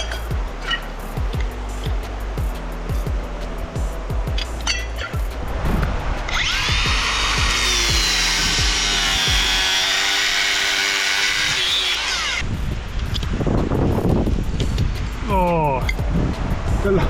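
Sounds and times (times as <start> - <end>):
power tool cutting metal rod: 6.3 - 12.4.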